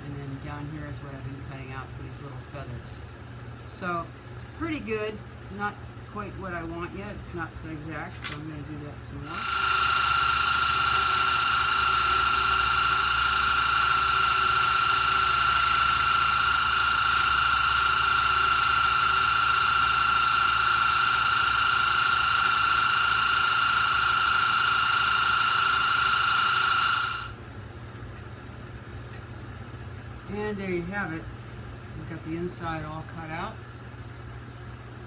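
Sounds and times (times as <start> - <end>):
scroll saw whining: 9.2 - 27.4.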